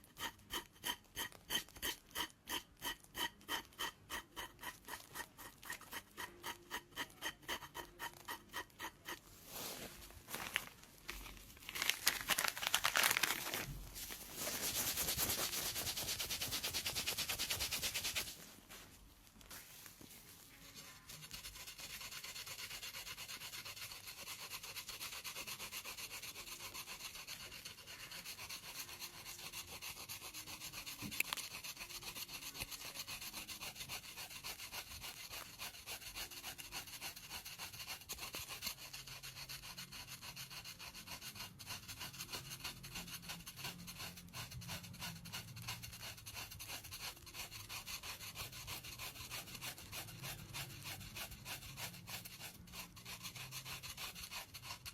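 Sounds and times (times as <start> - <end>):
blade scraping skin: 0.1 - 9.2, 21.2 - 38.6.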